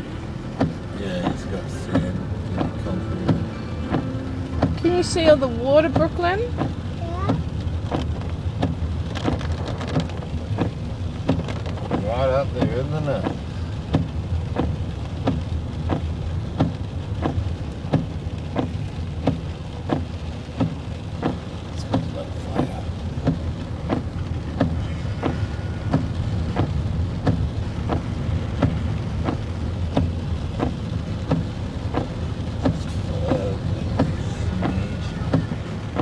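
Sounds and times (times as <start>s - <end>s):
low rumble: 0.0s - 16.5s
heavy rain: 0.0s - 36.0s.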